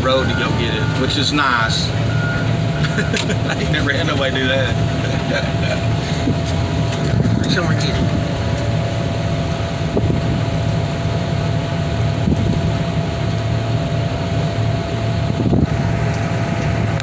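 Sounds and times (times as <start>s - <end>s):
diesel engine rumbling and whining: 0.0s - 17.0s
wind on microphone: 5.8s - 17.0s.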